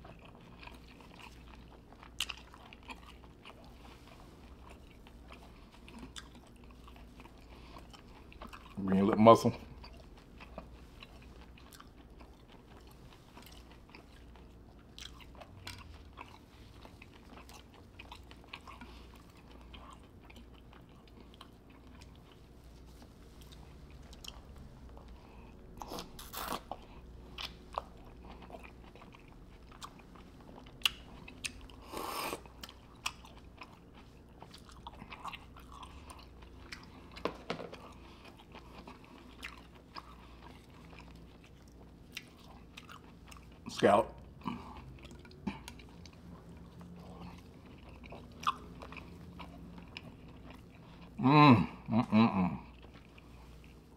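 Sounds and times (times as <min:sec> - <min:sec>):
person chewing with wet smacking: 0:00.0 - 0:51.2, 0:52.6 - 0:53.9.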